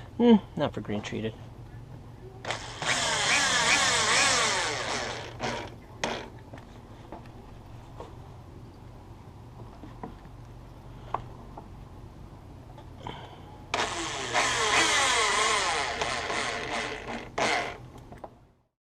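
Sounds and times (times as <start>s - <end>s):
low steady hum: 0.0s - 18.7s
power drill driving a screw: 2.5s - 6.3s, 13.7s - 17.8s.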